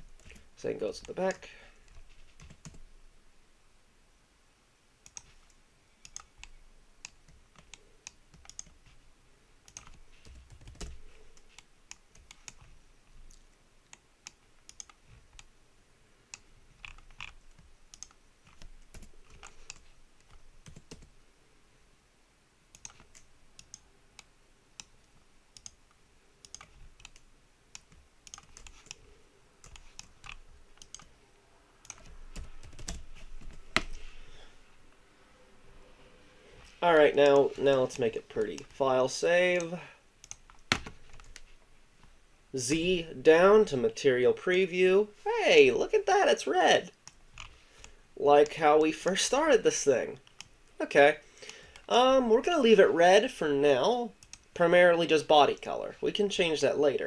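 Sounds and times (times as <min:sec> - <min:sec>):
computer keyboard keys clicking: 0:06.0 - 0:08.8, 0:09.7 - 0:12.7, 0:29.6 - 0:31.1, 0:31.8 - 0:34.0.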